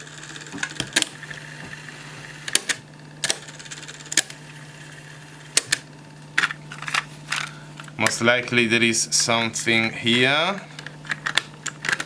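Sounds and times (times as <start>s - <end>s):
cassette deck hum: 0.0s - 12.0s
cassette mechanism clicks: 0.5s - 1.4s, 2.4s - 3.5s, 4.1s - 4.4s, 5.5s - 8.2s.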